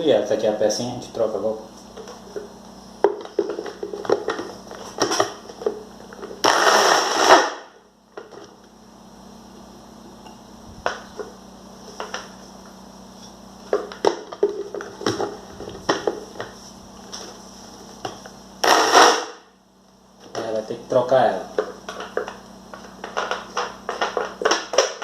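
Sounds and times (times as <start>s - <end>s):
blender motor running: 6.4s - 7.7s, 18.6s - 19.4s.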